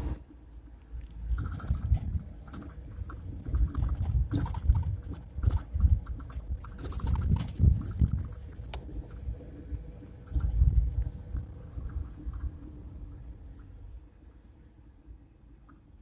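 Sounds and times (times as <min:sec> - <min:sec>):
van suspension knocking and rattling: 0:01.4 - 0:09.3.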